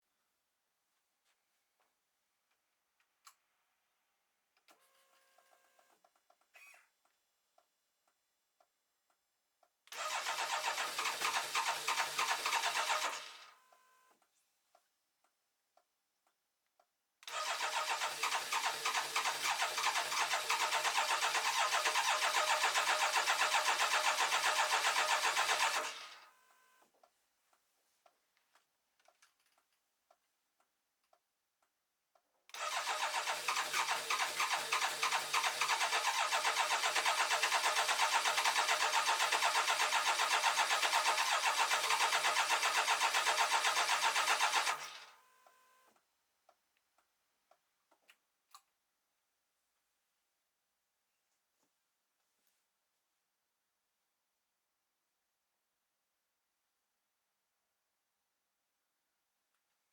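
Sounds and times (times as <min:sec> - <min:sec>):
engine cranking on starter: 0:09.9 - 0:13.5, 0:17.3 - 0:26.2, 0:32.6 - 0:45.2.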